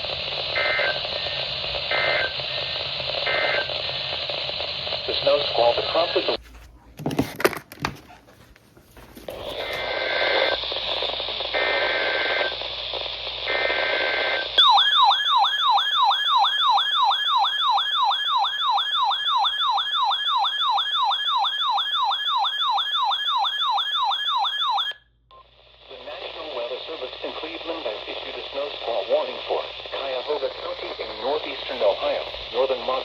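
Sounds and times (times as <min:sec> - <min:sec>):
radio static: 0:00.0 - 0:06.4, 0:09.2 - 0:14.6, 0:25.3 - 0:33.0
warbling alert siren: 0:14.1 - 0:25.0.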